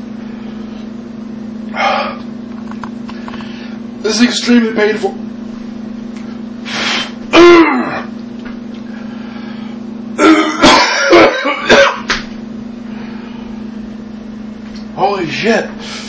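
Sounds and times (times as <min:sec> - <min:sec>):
man coughing: 0:07.3 - 0:08.1, 0:10.2 - 0:12.1.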